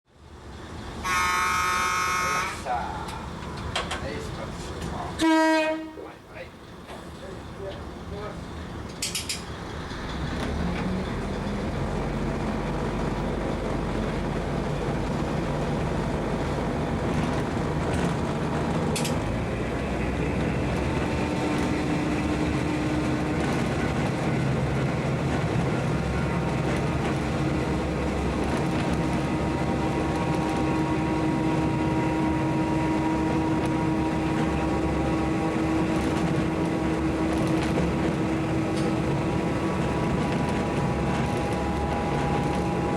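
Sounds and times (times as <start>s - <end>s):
railcar diesel engine drone: 0.1s - 42.9s.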